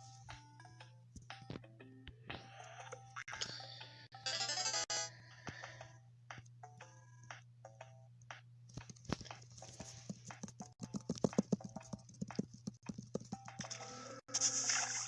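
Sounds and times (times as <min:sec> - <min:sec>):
rapid uneven clicks and knocks: 0:10.4 - 0:13.6.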